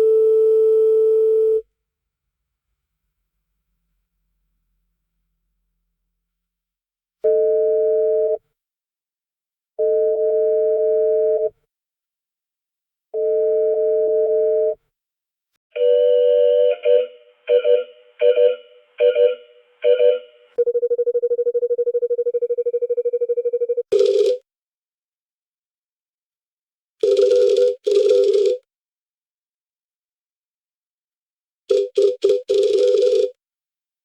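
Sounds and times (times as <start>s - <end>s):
mobile phone vibrating: 31.7s - 33.3s.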